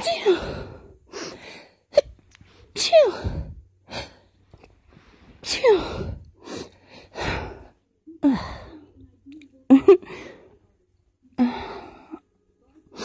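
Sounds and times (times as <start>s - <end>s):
breathy gasps and sighs: 0.0s - 8.9s.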